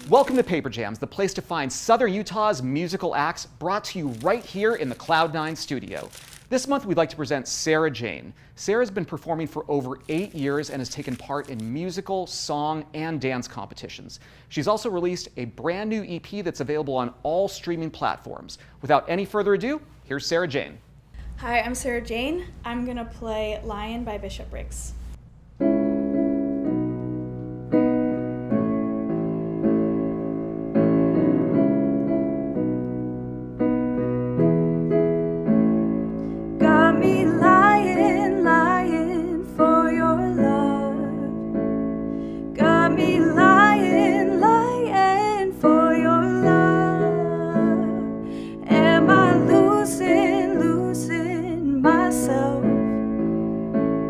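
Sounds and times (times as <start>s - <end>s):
slow piano chords: 25.6s - 54.0s
woman singing: 36.6s - 41.4s, 42.6s - 53.0s.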